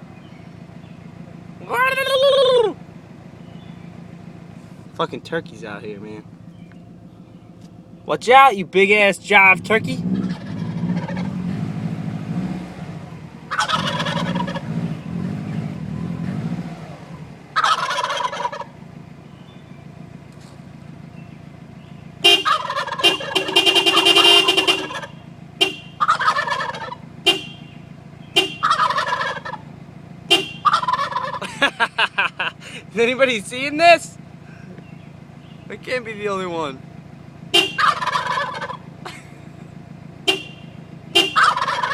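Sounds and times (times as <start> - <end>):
car engine running: 0.0 - 41.9
turkeys gobbling: 1.7 - 2.8, 10.1 - 11.4, 13.4 - 14.7, 17.5 - 18.8, 22.2 - 27.4, 28.3 - 29.7, 30.3 - 32.8, 37.6 - 39.4, 41.2 - 41.9.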